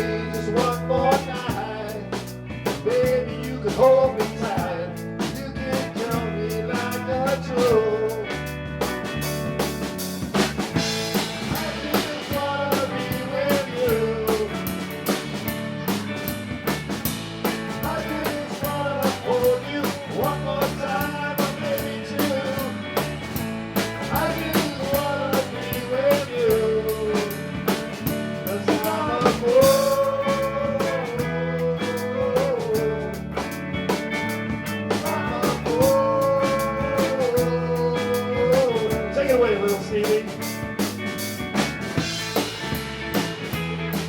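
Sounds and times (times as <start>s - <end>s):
band playing blues-rock: 0.0s - 44.0s
drum kit and bass beat: 0.0s - 44.0s.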